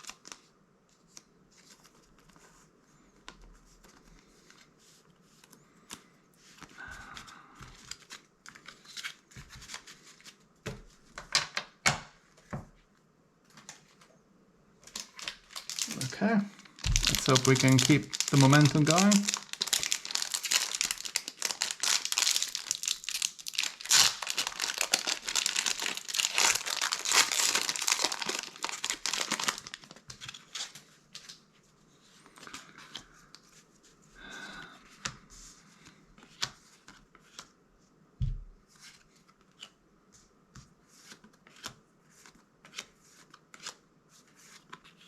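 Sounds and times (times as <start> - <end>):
cards clicking and rustling: 14.8 - 31.4, 41.0 - 43.8
foil wrapper tearing and crinkling: 14.9 - 30.7.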